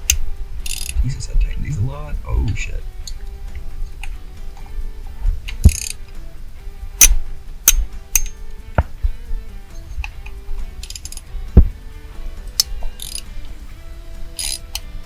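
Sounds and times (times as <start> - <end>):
ratchet clicking: 0.0 - 1.0, 5.5 - 6.2, 7.0 - 11.6, 12.5 - 13.6, 14.3 - 15.0
background music: 0.0 - 15.0.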